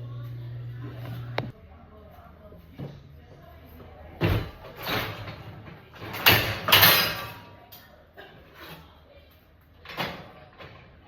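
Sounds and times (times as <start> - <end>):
dishwasher rack sliding on rollers: 4.4 - 7.6.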